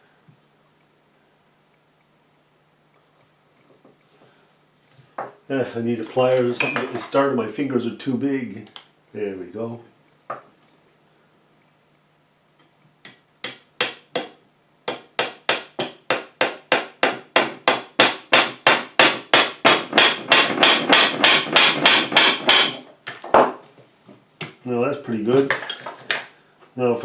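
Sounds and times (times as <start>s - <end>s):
small hammer tapping a nail: 13.0s - 23.2s.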